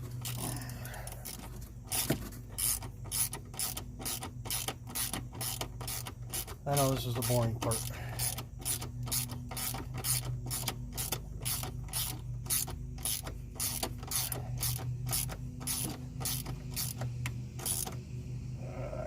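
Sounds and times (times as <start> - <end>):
ratchet wrench clicking: 0.2 - 18.0.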